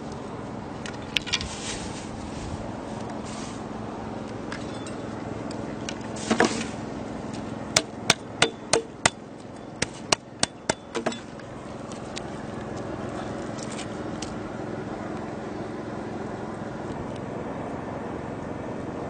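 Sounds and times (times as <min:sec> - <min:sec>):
steady low hum: 0:00.0 - 0:19.0
sharp knocks: 0:07.8 - 0:09.2, 0:09.8 - 0:11.3.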